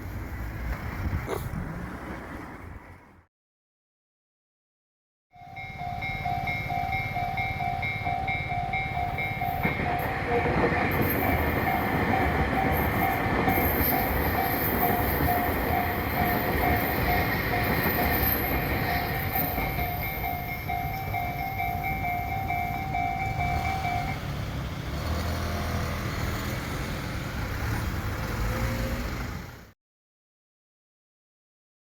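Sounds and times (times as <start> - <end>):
train rumbling over rails: 0.0 - 3.2, 5.4 - 29.7
level-crossing warning bell: 5.3 - 24.6.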